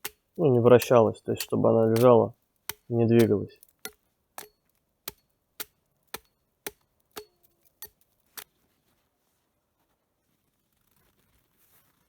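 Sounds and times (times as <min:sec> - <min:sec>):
axe chopping log: 0:00.0 - 0:08.0.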